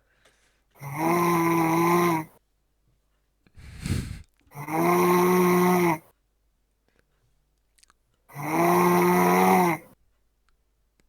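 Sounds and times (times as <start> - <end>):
person snoring: 0.8 - 2.3, 3.6 - 6.0, 8.3 - 9.9.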